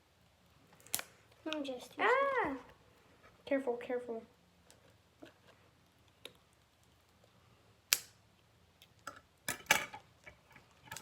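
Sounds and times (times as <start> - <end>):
clicks and rustles: 8.8 - 11.0.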